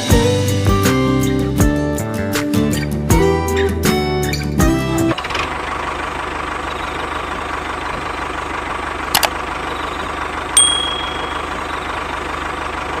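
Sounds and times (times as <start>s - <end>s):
tractor engine idling: 5.1s - 13.0s
sharp click with high ring: 10.6s - 11.6s.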